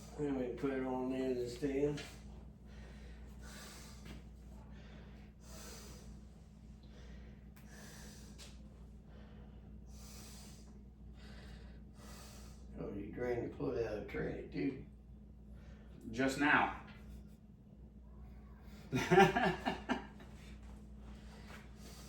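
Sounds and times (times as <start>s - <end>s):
low electrical hum: 0.0s - 22.0s
person breathing: 2.1s - 12.7s, 15.5s - 16.0s, 20.3s - 22.0s.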